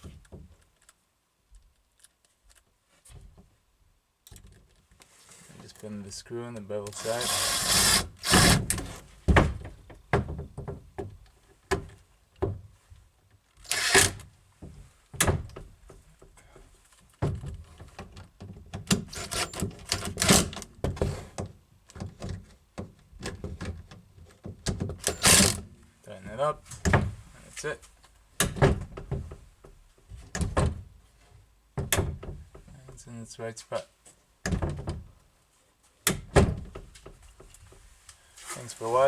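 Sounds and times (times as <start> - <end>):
short sharp noisy bursts: 7.0 - 8.7
knocks thunks and clicks: 7.8 - 12.6.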